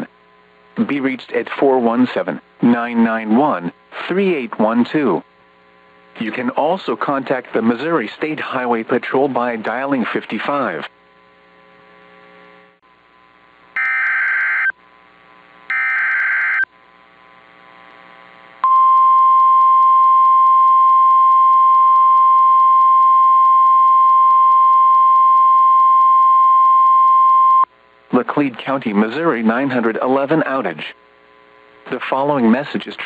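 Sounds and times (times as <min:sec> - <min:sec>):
faint electrical hum: 0:00.0 - 0:33.0
steady attention tone: 0:13.8 - 0:14.8, 0:15.7 - 0:16.7.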